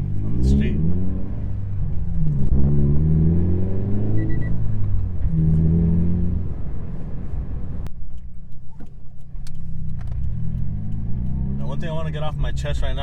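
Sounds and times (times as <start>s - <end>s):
car engine revving while driving: 0.0s - 7.9s, 9.2s - 13.0s
short high beep: 4.1s - 4.6s.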